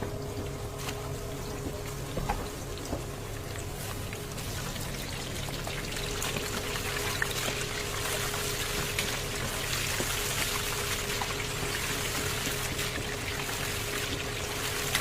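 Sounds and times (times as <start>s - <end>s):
chicken sizzling in hot oil: 3.5s - 15.0s.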